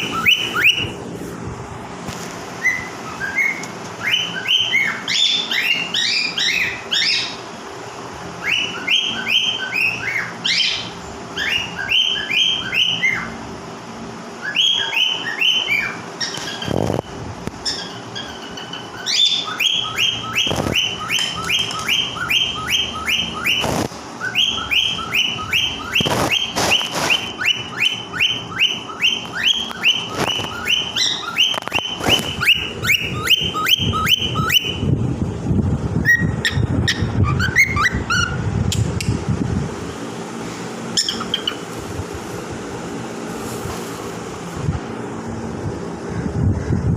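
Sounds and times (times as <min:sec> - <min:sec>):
animal chirping: 0:00.0 - 0:00.9, 0:17.6 - 0:34.8, 0:41.0 - 0:41.7.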